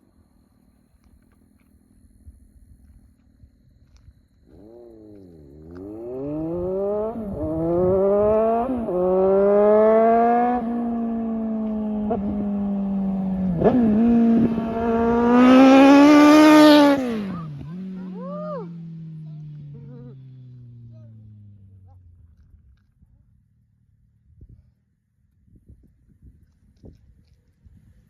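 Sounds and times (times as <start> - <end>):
motorcycle engine at full throttle: 3.8 - 24.8.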